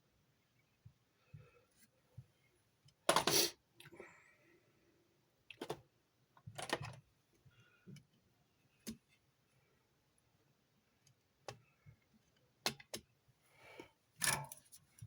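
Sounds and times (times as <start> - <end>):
clicks and handling noises: 5.5 - 7.1.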